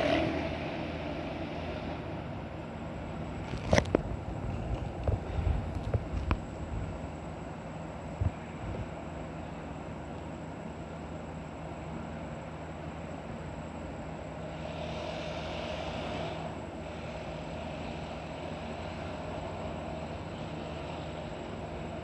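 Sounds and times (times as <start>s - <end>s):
hiss: 0.0s - 2.5s, 14.3s - 21.6s
low machinery hum: 0.0s - 22.0s.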